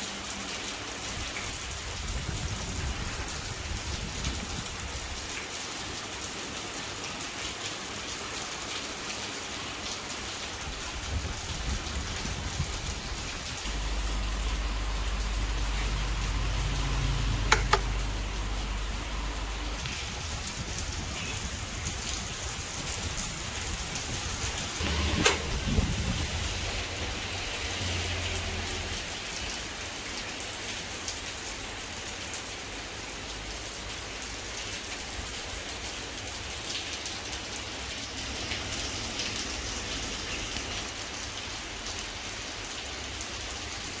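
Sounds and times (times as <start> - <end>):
electric fan rushing air: 13.6 - 20.8, 24.6 - 28.0.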